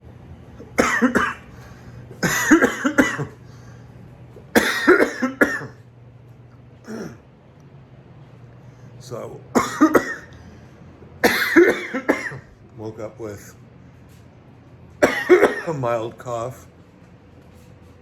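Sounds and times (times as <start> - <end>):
man coughing: 0.6 - 1.6, 2.2 - 3.5, 4.5 - 5.8, 6.8 - 7.3, 9.6 - 10.4, 11.2 - 12.6, 15.0 - 16.0.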